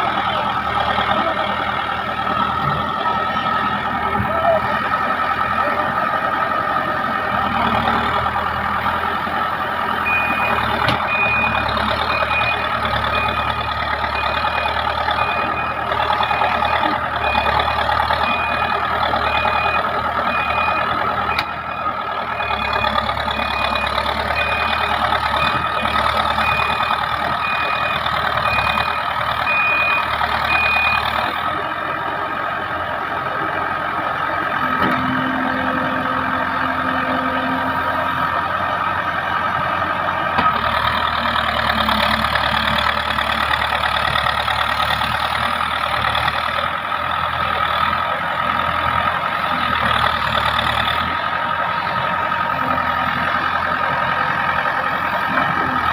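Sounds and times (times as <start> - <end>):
diesel engine running under load: 0.0 - 55.9
reversing alarm beeps: 10.0 - 31.4.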